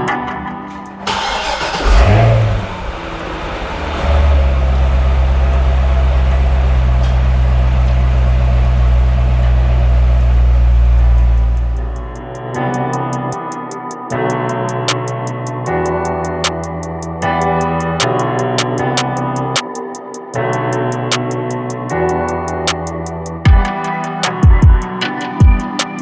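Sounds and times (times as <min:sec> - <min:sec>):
car engine starting and idling: 0:01.0 - 0:12.1.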